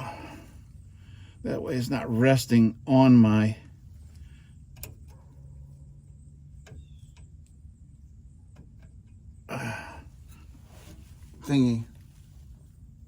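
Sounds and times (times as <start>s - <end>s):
low steady hum: 0.0s - 13.0s
person sighing: 9.5s - 10.1s.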